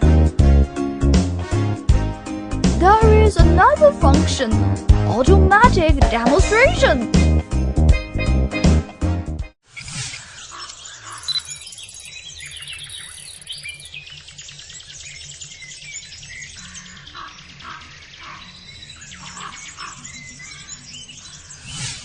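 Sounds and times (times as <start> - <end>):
background music: 0.0 - 9.6
birds chirping: 9.8 - 22.0.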